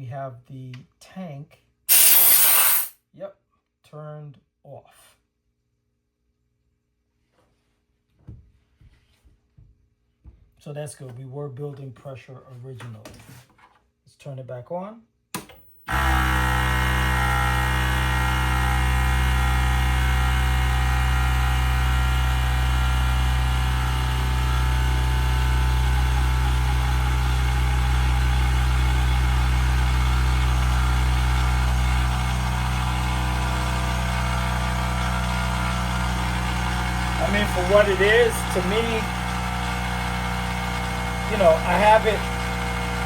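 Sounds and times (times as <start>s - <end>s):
air compressor running: 1.9s - 2.9s, 15.9s - 43.0s.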